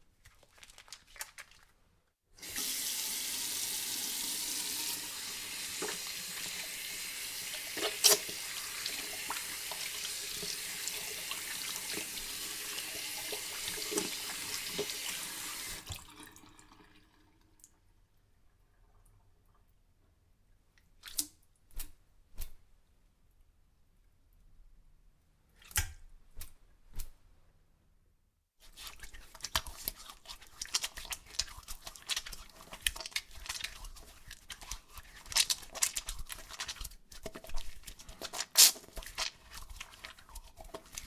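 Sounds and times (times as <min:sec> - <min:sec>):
hands washing splashes: 0:00.2 - 0:01.8, 0:02.4 - 0:16.3, 0:28.6 - 0:41.0
tap water running: 0:02.4 - 0:17.5.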